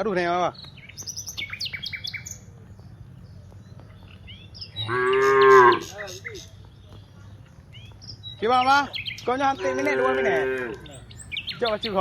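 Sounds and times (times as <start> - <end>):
birds chirping faintly: 0.0 - 12.0
cow mooing: 4.8 - 5.9, 9.6 - 10.9.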